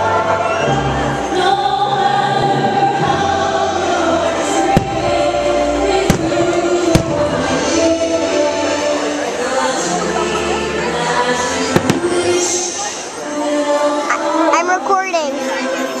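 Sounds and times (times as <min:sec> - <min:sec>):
choir singing over music: 0:00.0 - 0:16.0
firework bangs: 0:04.6 - 0:07.8, 0:11.7 - 0:12.7.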